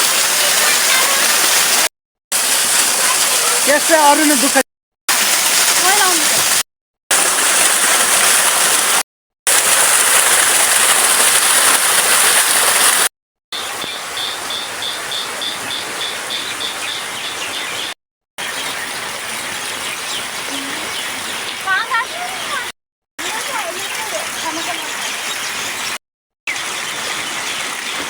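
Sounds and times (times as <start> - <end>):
steady rain: 0.0 - 17.0
rushing water: 0.0 - 28.0.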